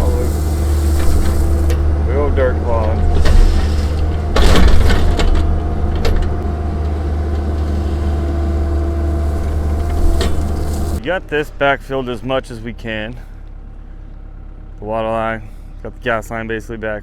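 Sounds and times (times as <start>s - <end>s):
clatter and rushing dirt: 0.0s - 11.0s
diesel engine running: 0.0s - 17.0s.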